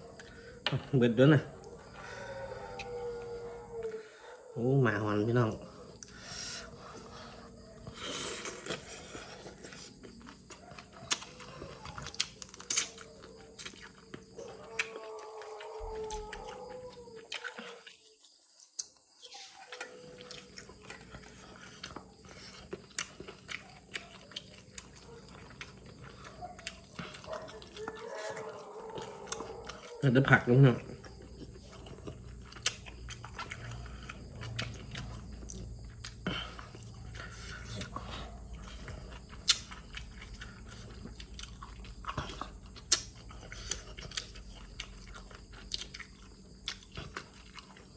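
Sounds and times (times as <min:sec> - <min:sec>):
chewing crunches: 0:00.0 - 0:04.0, 0:05.0 - 0:47.9
dog howling: 0:01.3 - 0:08.0, 0:10.5 - 0:18.0, 0:19.2 - 0:22.5, 0:23.6 - 0:32.1.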